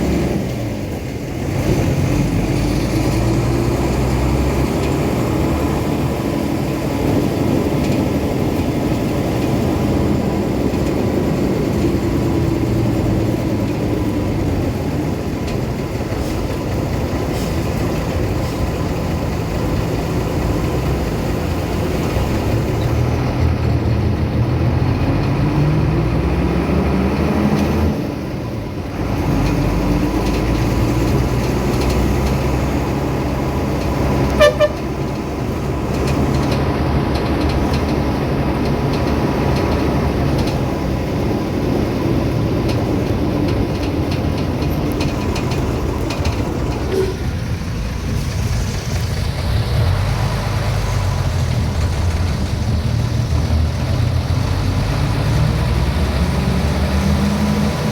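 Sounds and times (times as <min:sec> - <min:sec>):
vehicle engine accelerating: 0:00.0 - 0:57.9
car horn toot: 0:34.3 - 0:35.0.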